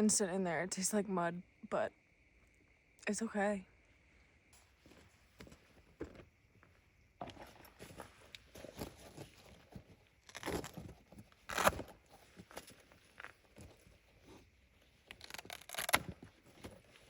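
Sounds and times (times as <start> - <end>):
rustling and handling noises: 7.2 - 17.0.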